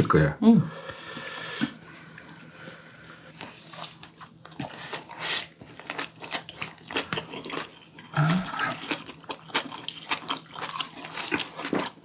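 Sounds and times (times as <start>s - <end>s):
crunchy wet chewing: 2.2s - 12.0s.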